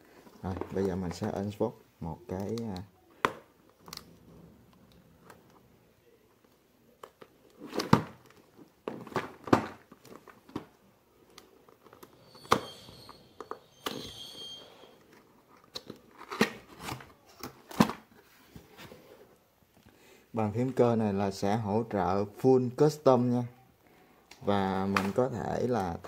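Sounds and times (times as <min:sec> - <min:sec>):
squeaky tearing: 0:11.9 - 0:15.0.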